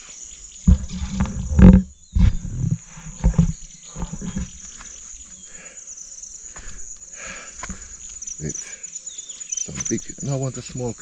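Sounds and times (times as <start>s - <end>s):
high-pitched insect chirring: 2.8s - 11.0s.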